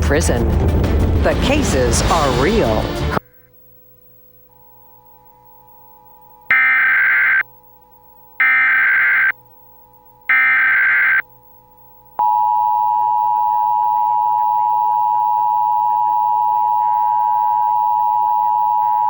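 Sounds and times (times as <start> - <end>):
digital data tone bursts: 6.5 - 7.4, 8.4 - 9.4, 10.3 - 11.2
two-tone attention signal: 6.5 - 7.4, 8.4 - 9.3, 10.3 - 11.2.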